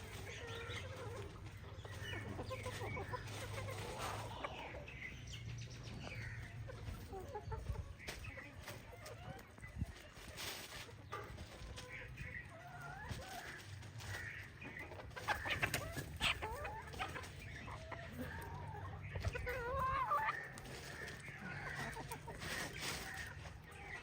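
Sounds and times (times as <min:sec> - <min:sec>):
chickens clucking: 0:00.0 - 0:24.0
chicken squawks: 0:11.6 - 0:24.0.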